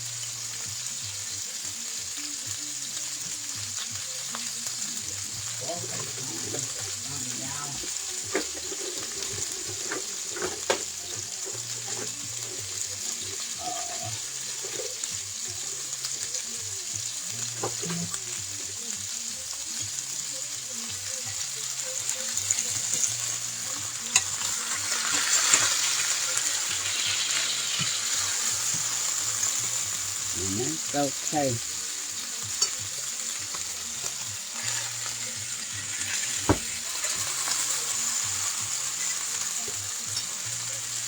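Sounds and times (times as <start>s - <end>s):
meat sizzling in oil: 0.0s - 41.0s.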